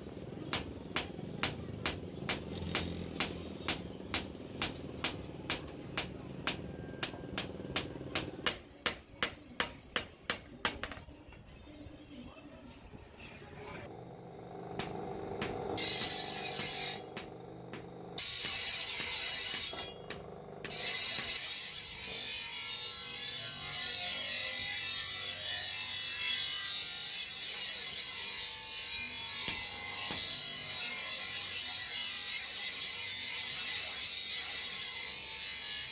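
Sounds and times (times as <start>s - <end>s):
metal scraping on machine blade: 15.7s - 35.9s.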